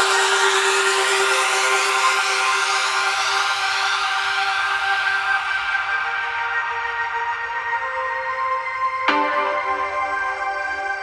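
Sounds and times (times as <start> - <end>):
synth pad sustained chords: 5.6 - 11.0.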